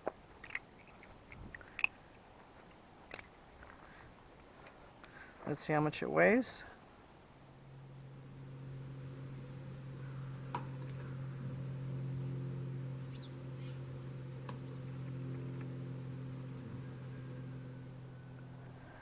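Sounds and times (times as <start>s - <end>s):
low motor hum: 6.8s - 19.0s.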